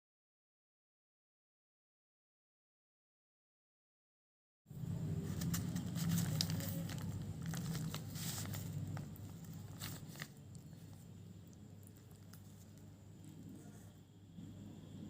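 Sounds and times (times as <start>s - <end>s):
steady low hum: 4.7s - 15.0s
crinkling and crackling: 5.1s - 13.9s.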